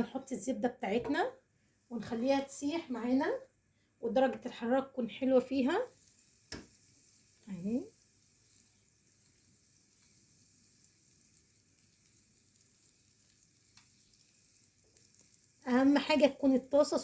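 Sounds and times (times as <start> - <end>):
butter sizzling in a pan: 4.0 - 17.0.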